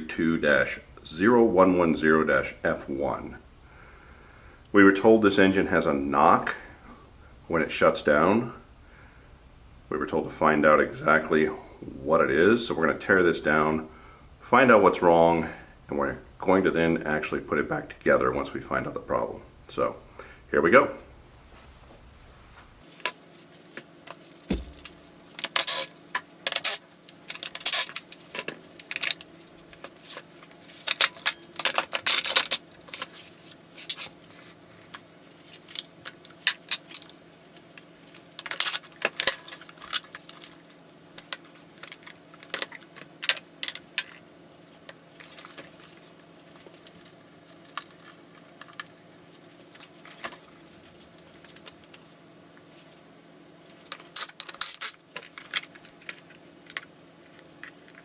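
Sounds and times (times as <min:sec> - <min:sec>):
faint steady hum: 0:00.0 - 0:58.0.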